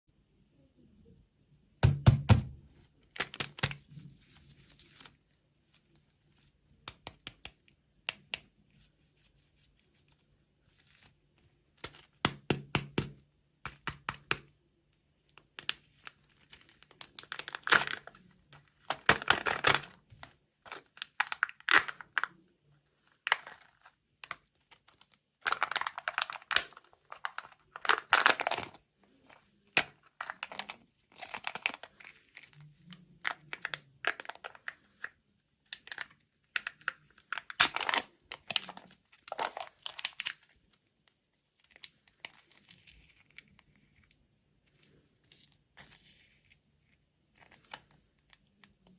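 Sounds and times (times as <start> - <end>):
wrapper tearing and crinkling: 3.1 - 5.3, 15.4 - 22.4, 23.0 - 28.8, 29.7 - 35.1, 35.7 - 44.2
crunching bites of candy: 15.6 - 22.4, 23.3 - 28.8, 29.6 - 40.6.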